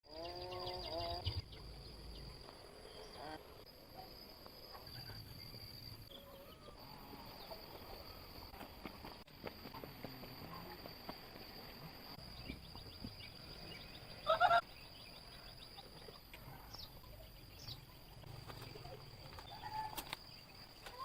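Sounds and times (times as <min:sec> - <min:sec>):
bird chirps: 0:00.1 - 0:08.6, 0:12.2 - 0:21.0
faint high whine: 0:01.3 - 0:21.0
loud animal call: 0:14.2 - 0:14.6.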